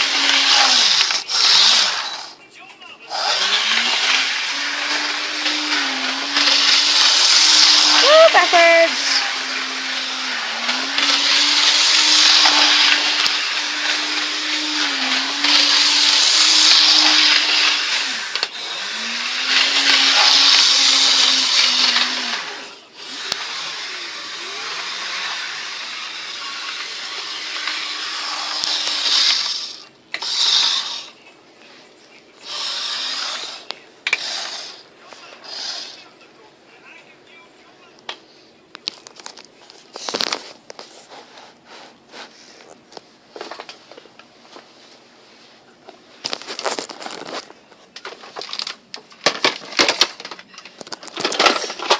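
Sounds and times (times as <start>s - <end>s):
toy train motor whirring: 0.0s - 2.4s, 3.1s - 31.2s, 32.4s - 36.1s, 48.1s - 51.9s.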